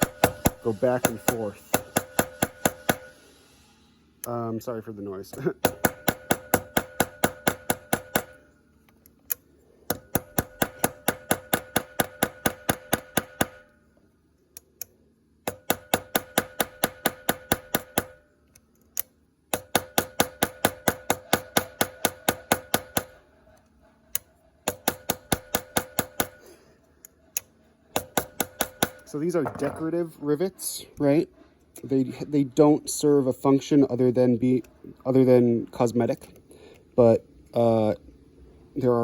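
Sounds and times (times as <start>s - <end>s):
small hammer tapping metal: 0.0s - 3.1s, 5.3s - 8.4s, 9.3s - 13.7s, 19.0s - 23.2s, 24.1s - 26.4s, 27.3s - 29.8s.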